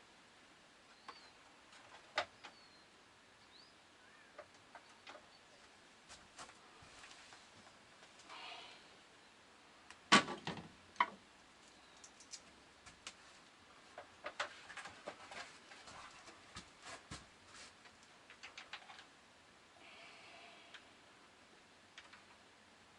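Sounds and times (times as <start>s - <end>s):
small hard objects clicking and knocking: 10.2s - 13.2s, 17.8s - 19.1s.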